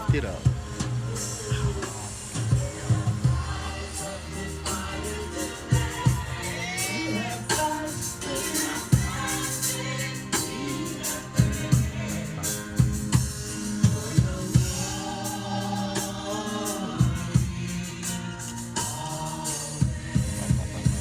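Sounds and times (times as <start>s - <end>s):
singing: 0.0s - 21.0s
drum kit kick and snare hits: 10.4s - 15.4s, 19.8s - 21.0s.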